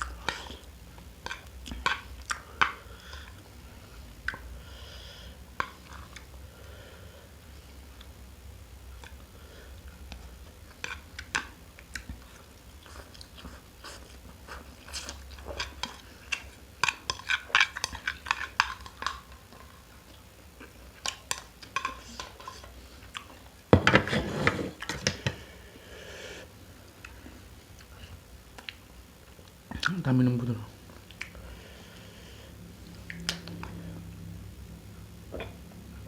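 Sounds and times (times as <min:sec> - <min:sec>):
person chewing noodles: 0:09.0 - 0:23.6.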